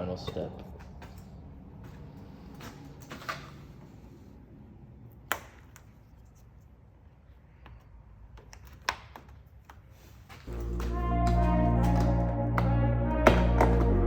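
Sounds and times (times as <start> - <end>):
music with strong bass: 10.5 - 14.0.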